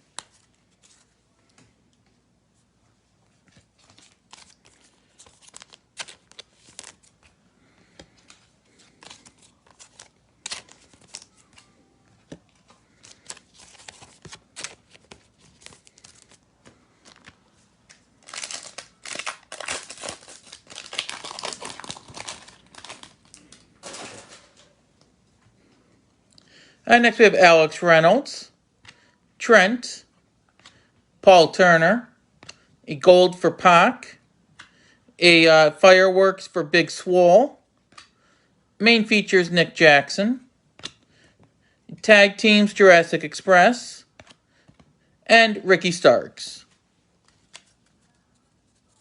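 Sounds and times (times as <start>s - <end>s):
foil wrapper crinkling and tearing: 18.2s - 24.2s.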